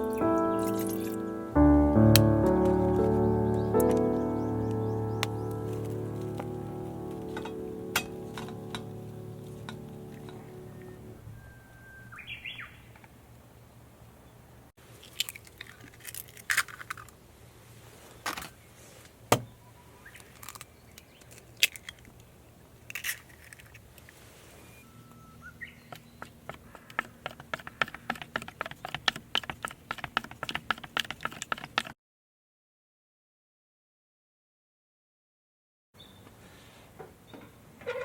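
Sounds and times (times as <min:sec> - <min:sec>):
metallic clinks and knocks: 0:07.1 - 0:10.5
fast run of small clicks: 0:25.9 - 0:31.9.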